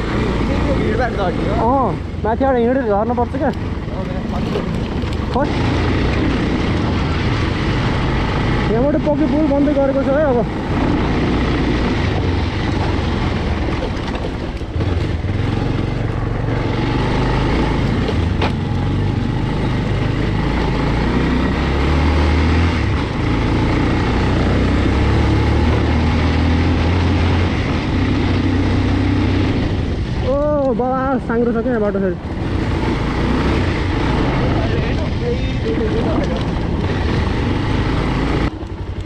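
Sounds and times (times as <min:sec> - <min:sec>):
motorcycle engine running: 0:00.0 - 0:39.0.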